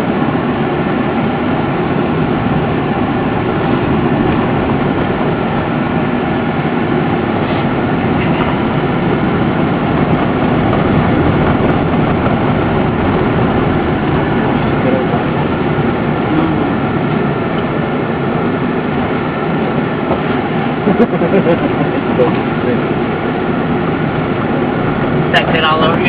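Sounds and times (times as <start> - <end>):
road noise: 0.0 - 26.0
van engine rumble: 0.0 - 26.0.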